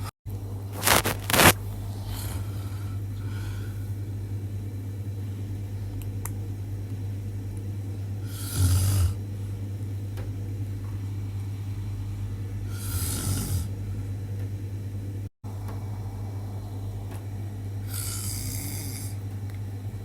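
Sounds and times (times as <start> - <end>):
steady low hum: 0.0 - 20.0
man snoring: 1.9 - 3.8, 8.2 - 9.2, 12.6 - 13.8, 17.8 - 19.2.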